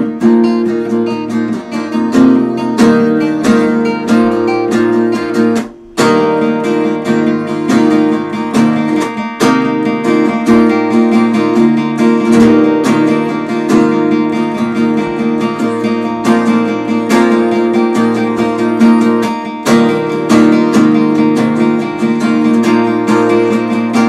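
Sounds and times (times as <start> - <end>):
acoustic guitar strumming chords: 0.0 - 24.0.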